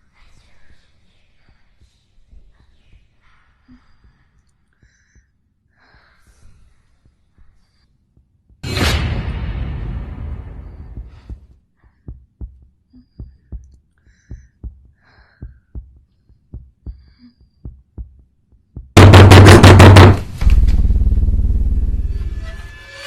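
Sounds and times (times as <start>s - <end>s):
loud rapid pounding strikes: 8.6s - 11.4s, 19.0s - 21.8s
heartbeat double thumps: 10.6s - 21.4s.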